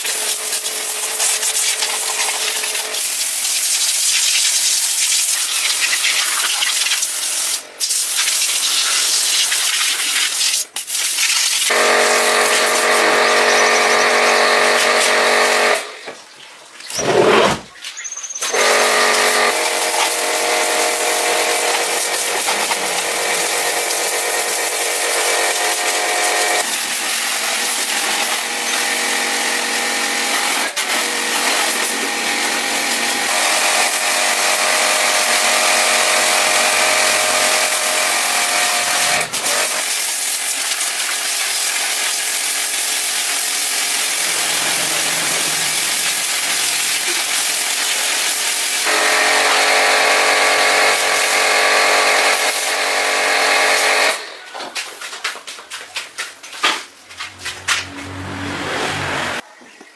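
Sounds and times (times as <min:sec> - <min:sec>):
power tool whining: 0:11.7 - 0:16.0, 0:18.5 - 0:40.0, 0:41.8 - 0:54.4
loud hiss: 0:35.5 - 0:48.9.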